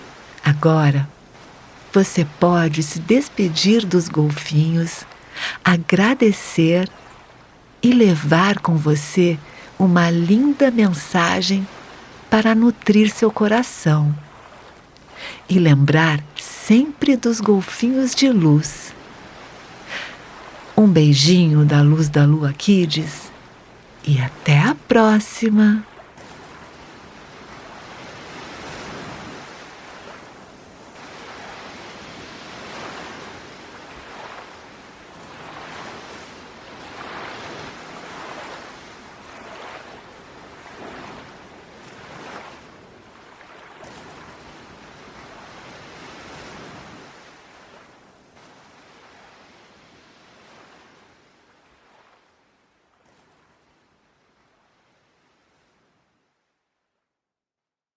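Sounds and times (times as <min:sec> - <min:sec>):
ocean waves breaking on shore: 0:00.0 - 0:56.4.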